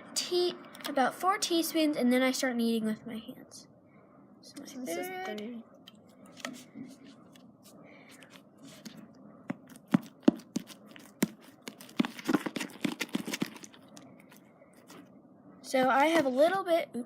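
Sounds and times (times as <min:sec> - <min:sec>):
spoon stirring sticky slime: 0:09.5 - 0:15.0.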